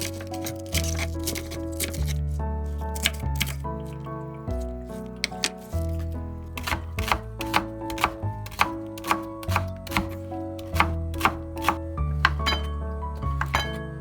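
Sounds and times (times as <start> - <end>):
soft background music: 0.0 - 14.0
knife chopping on cutting board: 6.6 - 12.8.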